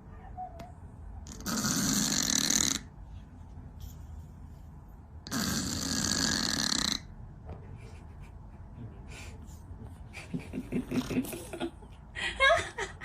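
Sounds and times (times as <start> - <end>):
cat snoring: 1.3 - 2.9, 5.3 - 7.1.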